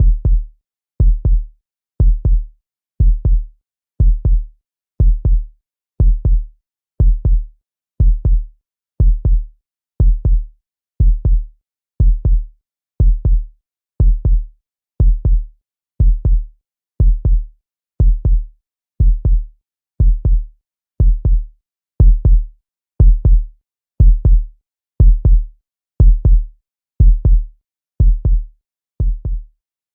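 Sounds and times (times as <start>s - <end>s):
heartbeat double thump: 23.0s - 23.4s, 24.0s - 24.4s, 25.0s - 25.4s, 26.0s - 29.5s.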